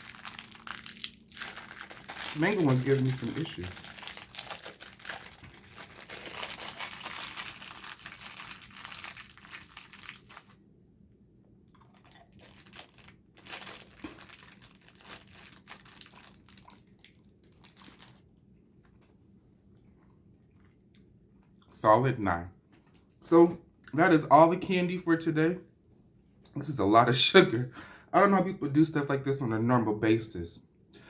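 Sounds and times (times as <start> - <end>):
plastic wrapper crinkling: 0.0 - 10.6, 11.8 - 18.3.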